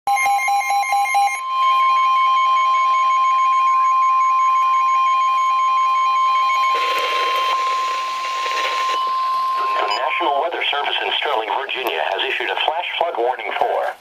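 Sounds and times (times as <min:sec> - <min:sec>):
high steady alert tone: 0:00.1 - 0:11.8
radio hiss: 0:09.6 - 0:14.0.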